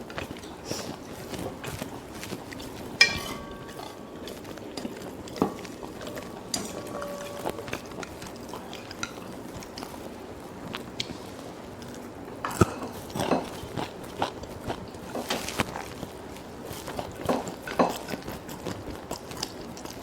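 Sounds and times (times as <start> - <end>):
cutlery clinking on plate: 2.2 - 10.1, 12.5 - 13.6, 17.2 - 18.2.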